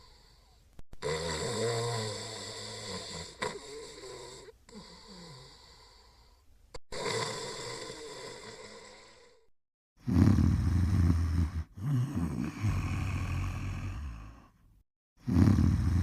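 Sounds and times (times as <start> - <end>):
soft breathing: 0.0 - 0.8, 3.6 - 6.6
person snoring: 0.0 - 16.0.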